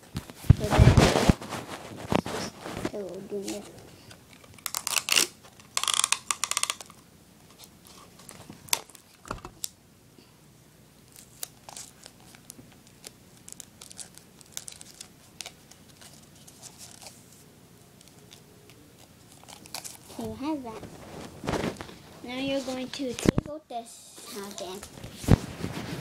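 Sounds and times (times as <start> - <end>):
paper and tape crinkling: 0.1 - 9.7, 11.1 - 17.4, 18.0 - 23.5, 24.2 - 26.0
adhesive tape ripping off roll: 4.3 - 7.0, 11.1 - 17.2, 19.0 - 20.2.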